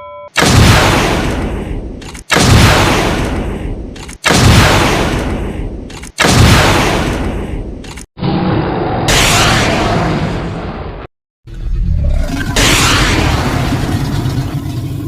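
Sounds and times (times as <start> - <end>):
cannon blasts with rumble: 0.4 - 7.8.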